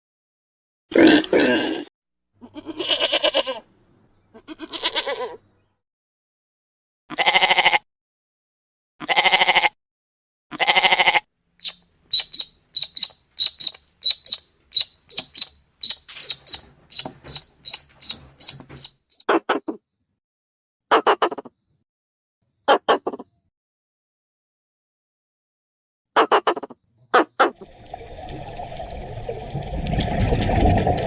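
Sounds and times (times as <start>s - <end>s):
bleating: 2.4s - 3.6s, 4.3s - 5.5s, 7.1s - 7.8s, 9.0s - 9.8s, 10.5s - 11.3s.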